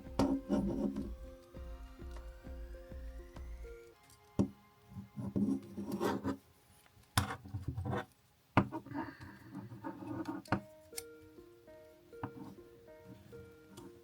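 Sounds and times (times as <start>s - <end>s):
background music: 0.0s - 8.0s, 8.8s - 14.0s
scraping and rubbing: 9.6s - 10.5s.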